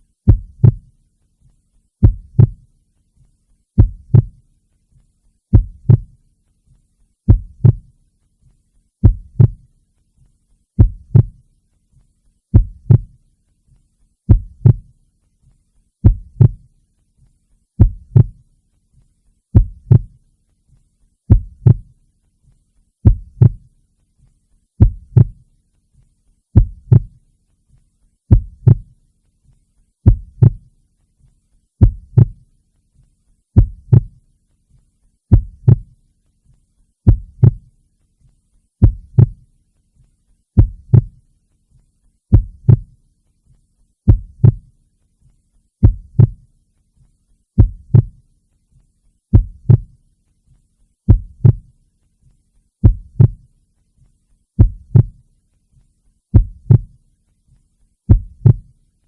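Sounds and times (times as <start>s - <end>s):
heartbeat double thump: 0.3s - 0.9s, 2.0s - 2.6s, 3.8s - 4.4s, 5.5s - 6.2s, 7.3s - 7.9s, 9.0s - 9.6s, 10.8s - 11.4s, 12.5s - 13.2s, 14.3s - 14.9s, 16.0s - 16.6s, 17.8s - 18.4s, 19.6s - 20.2s, 21.3s - 21.9s, 23.0s - 23.6s, 24.8s - 25.4s, 26.6s - 27.2s, 28.3s - 28.9s, 30.0s - 30.7s, 31.8s - 32.4s, 33.6s - 34.2s, 35.3s - 35.9s, 37.1s - 37.7s, 38.8s - 39.4s, 40.6s - 41.2s, 42.3s - 42.9s, 44.1s - 44.6s, 45.8s - 46.4s, 47.6s - 48.2s, 49.3s - 49.9s, 51.1s - 51.7s, 52.8s - 53.4s, 54.6s - 55.2s, 56.4s - 56.9s, 58.1s - 58.7s.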